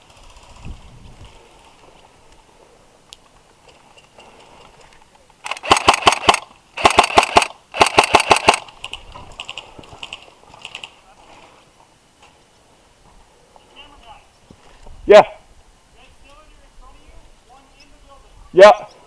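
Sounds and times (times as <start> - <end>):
airsoft rifle shots: 5.4 - 10.2.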